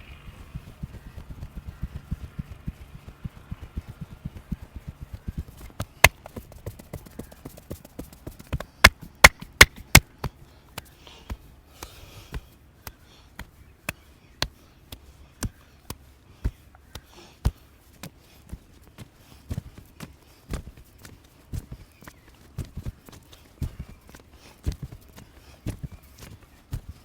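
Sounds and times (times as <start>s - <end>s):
soft massage thumps: 0.3s - 27.0s
sharp massage slaps: 1.2s - 18.1s.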